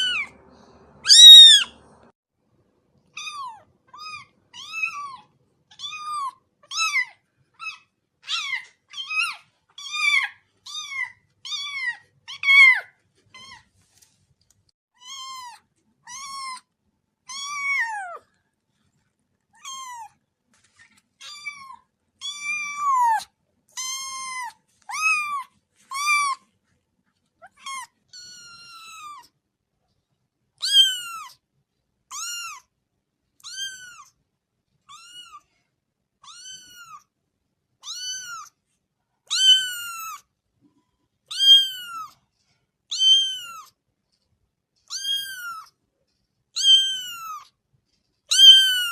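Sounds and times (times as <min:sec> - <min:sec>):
kitten mewing: 0:01.0 - 0:01.8.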